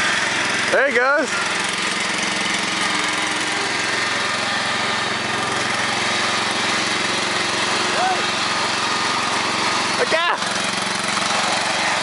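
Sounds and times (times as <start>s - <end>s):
small lawnmower engine running: 0.0s - 12.0s.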